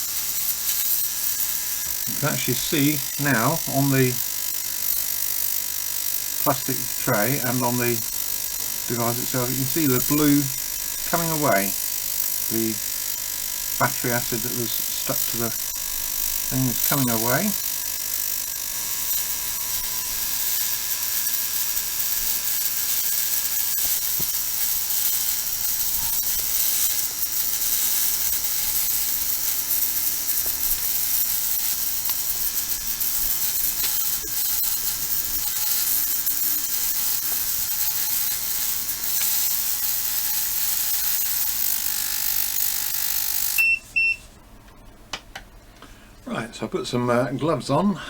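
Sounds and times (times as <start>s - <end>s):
ultrasonic cleaner hissing and buzzing: 0.0s - 43.6s
short beeps: 43.6s - 44.3s.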